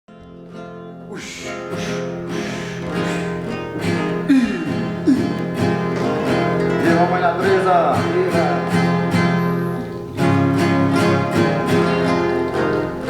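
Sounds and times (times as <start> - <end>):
acoustic guitar strumming: 0.1 - 13.0.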